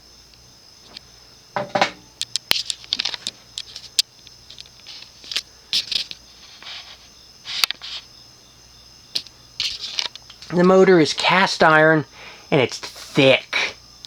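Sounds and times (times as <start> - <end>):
light clicks taps and scrapes: 9.2 - 10.5.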